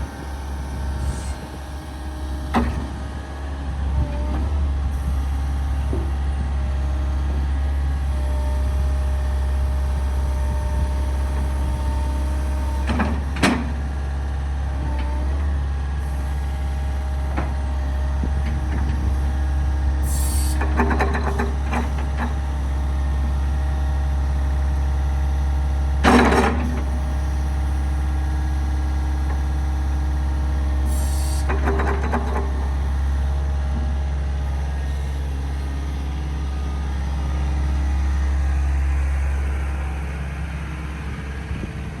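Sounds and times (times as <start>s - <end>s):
excavator diesel engine droning: 0.0s - 42.0s.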